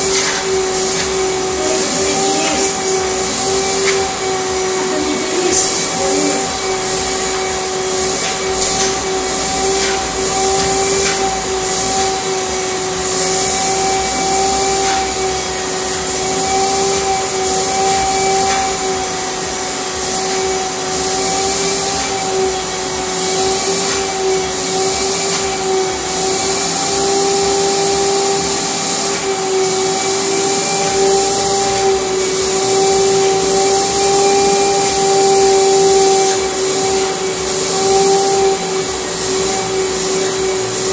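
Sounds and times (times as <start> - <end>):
vacuum cleaner running: 0.0 - 40.9.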